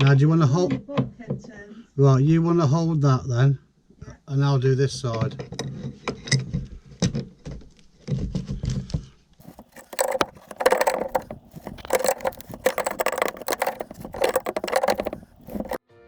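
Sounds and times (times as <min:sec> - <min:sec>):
spanners clinking on metal: 0:09.4 - 0:15.8.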